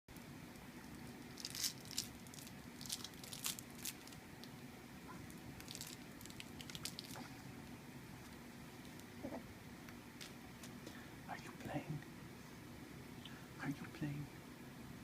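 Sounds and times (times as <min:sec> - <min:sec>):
crinkling and rustling: 0:00.9 - 0:07.5.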